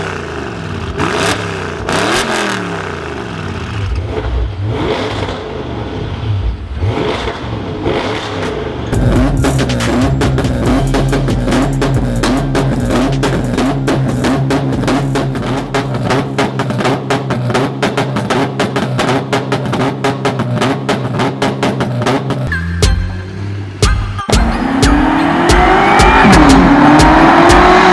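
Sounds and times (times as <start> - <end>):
steady bass: 9.0 - 21.0, 21.8 - 27.9
music with fast drum beat: 9.0 - 23.2, 23.8 - 27.9.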